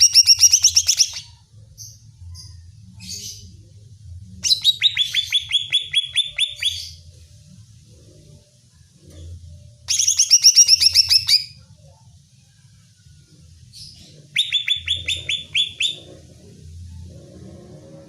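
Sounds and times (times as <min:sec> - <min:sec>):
bird chirping rapidly: 0:00.0 - 0:01.4, 0:04.4 - 0:07.0, 0:09.9 - 0:11.6, 0:14.3 - 0:16.2
faint low hum: 0:00.0 - 0:18.0.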